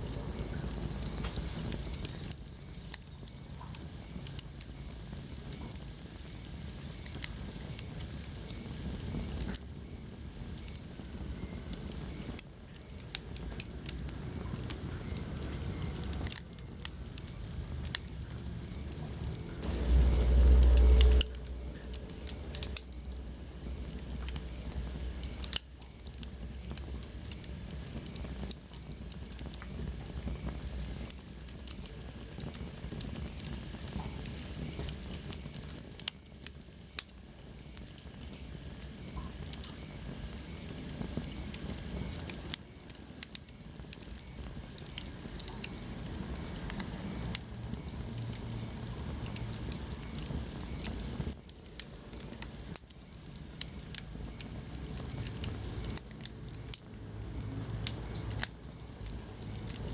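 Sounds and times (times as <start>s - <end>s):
wood fire crackling: 0.0s - 59.9s
loud low rumble: 18.2s - 24.7s.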